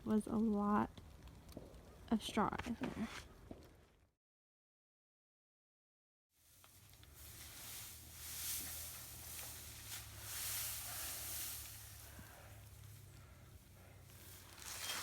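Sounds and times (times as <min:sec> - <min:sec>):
wind rustling through trees: 0:06.4 - 0:15.0
steady low hum: 0:06.7 - 0:14.7.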